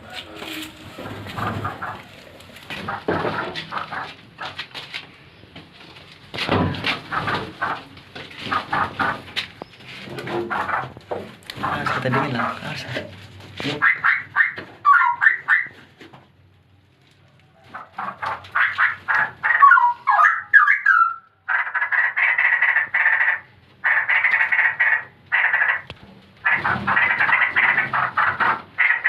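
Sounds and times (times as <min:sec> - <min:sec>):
nestlings chattering: 0:06.9 - 0:13.0, 0:13.6 - 0:15.7, 0:17.8 - 0:29.0
harsh rasping bird calls: 0:07.0 - 0:13.0, 0:13.6 - 0:15.8, 0:17.8 - 0:29.0.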